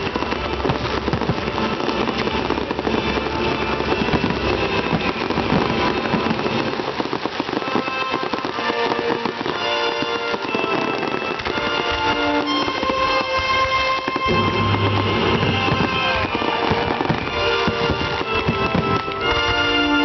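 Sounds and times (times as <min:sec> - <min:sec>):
fireworks crackling and popping: 0:00.0 - 0:20.0
music with held notes: 0:00.0 - 0:20.0.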